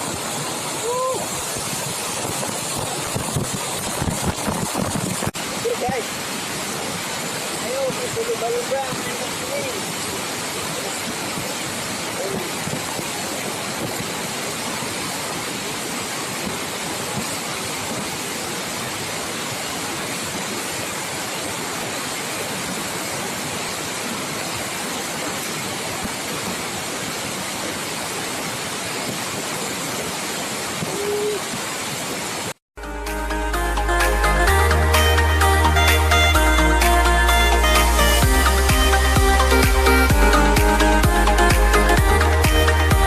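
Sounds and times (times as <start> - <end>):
waterfall rushing: 0.0 - 43.0
faint voice: 12.1 - 12.6, 30.9 - 31.5.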